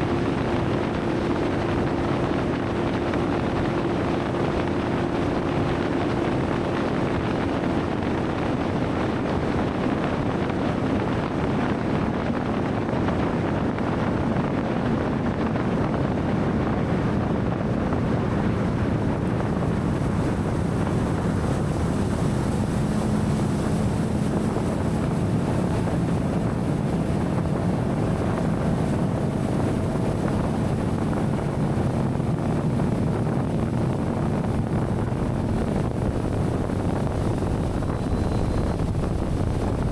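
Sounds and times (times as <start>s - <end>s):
wind noise on microphone: 0.0s - 39.9s
outboard motor running: 16.6s - 39.9s.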